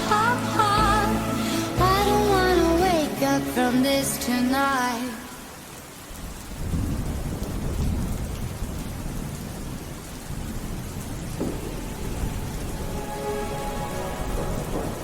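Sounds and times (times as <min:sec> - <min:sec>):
rain falling: 0:00.0 - 0:15.0
thunder rumbling: 0:06.2 - 0:15.0.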